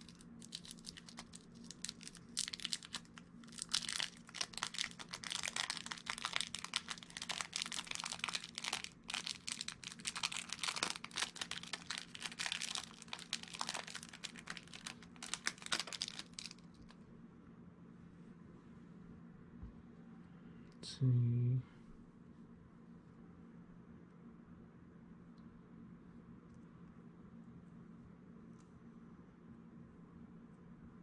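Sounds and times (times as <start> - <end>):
crinkling and rustling handling noise: 0.0 - 17.0.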